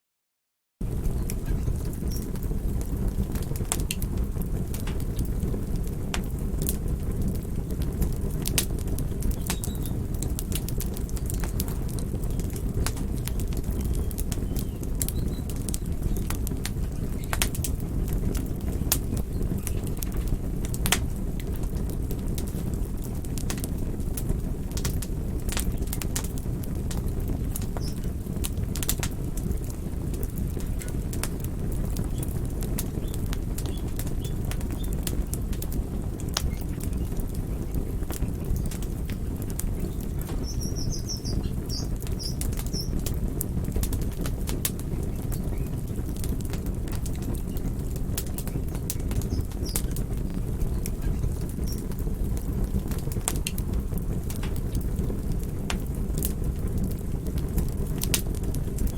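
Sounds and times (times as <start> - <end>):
flame rushing: 0.8 - 58.9
wood crackling and popping: 0.8 - 58.9
small bird chirping: 9.4 - 10.0, 27.8 - 28.0, 39.8 - 43.0, 49.2 - 50.0.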